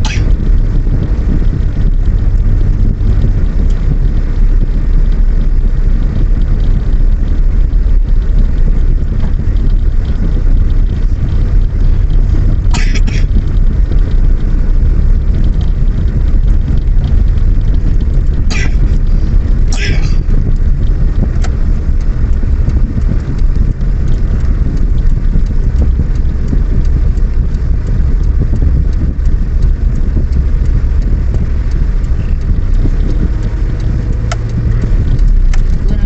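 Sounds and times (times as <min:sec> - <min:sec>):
sharp double sound: 0:00.0 - 0:00.6, 0:12.7 - 0:13.4
vehicle rumble on road: 0:00.0 - 0:36.0.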